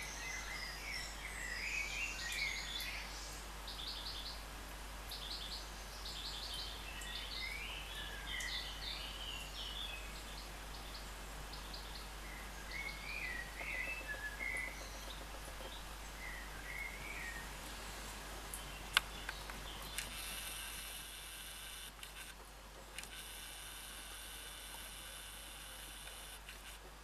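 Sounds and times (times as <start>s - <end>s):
songbirds chirping and singing: 0.0s - 4.4s, 5.1s - 17.5s
steady background hiss: 0.0s - 27.0s.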